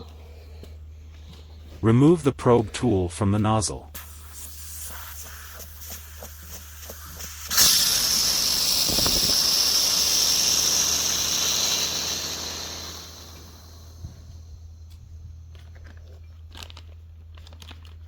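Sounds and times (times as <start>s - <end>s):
air hissing out of a tire: 3.9s - 14.6s.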